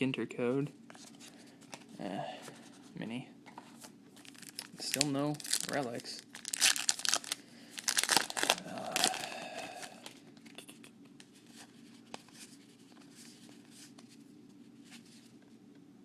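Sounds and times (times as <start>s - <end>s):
wrapper crinkling and tearing: 4.2s - 10.2s.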